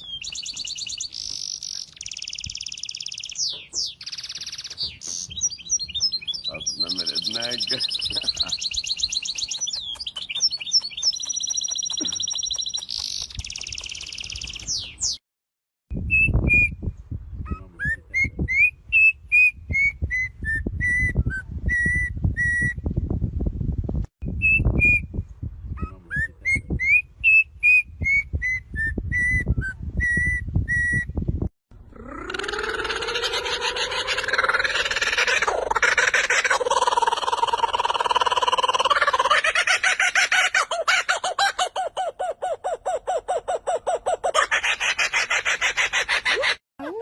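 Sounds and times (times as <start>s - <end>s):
bird trilling song: 0.0s - 15.2s
bird whistled notes: 26.5s - 31.1s.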